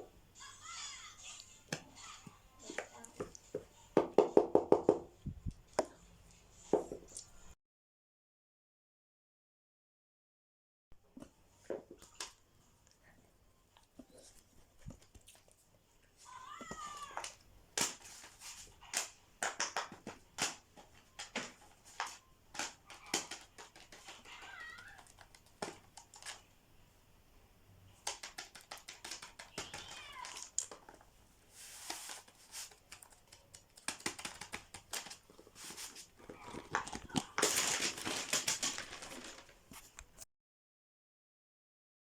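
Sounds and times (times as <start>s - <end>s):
sharp clicks and taps: 28.0s - 30.9s.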